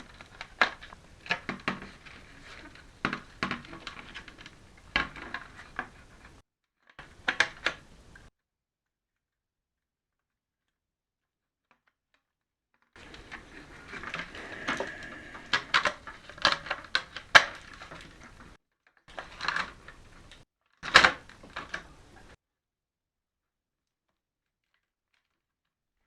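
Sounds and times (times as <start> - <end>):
sharp clicks and knocks: 7.0 - 8.3
handling noise: 13.0 - 22.4.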